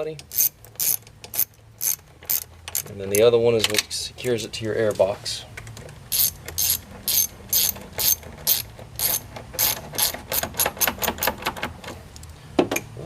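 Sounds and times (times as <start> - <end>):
socket ratchet clicking: 0.2 - 3.3, 6.1 - 11.6.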